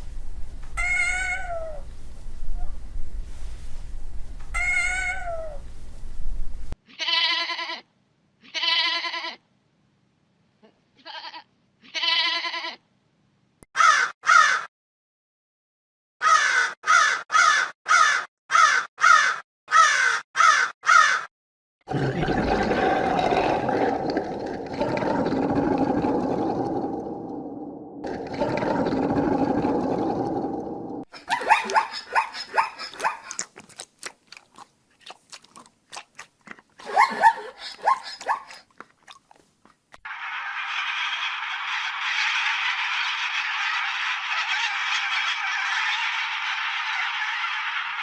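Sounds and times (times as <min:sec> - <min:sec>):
animal harsh cawing calls: 0:00.8 - 0:01.8, 0:04.6 - 0:05.6, 0:13.8 - 0:14.7, 0:16.2 - 0:21.3
cat meowing: 0:00.8 - 0:01.8, 0:04.5 - 0:05.6.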